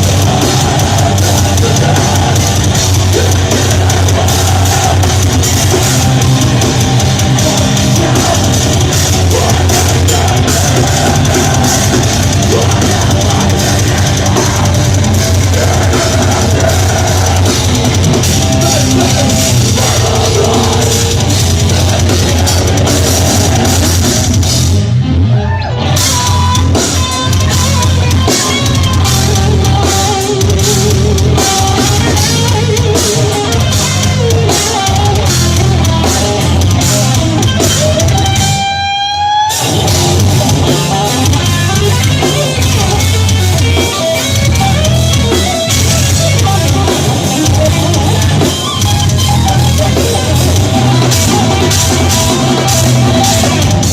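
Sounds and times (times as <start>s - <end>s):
pounding drums: 0.0s - 24.9s, 39.5s - 53.9s
death metal band playing: 0.0s - 53.9s.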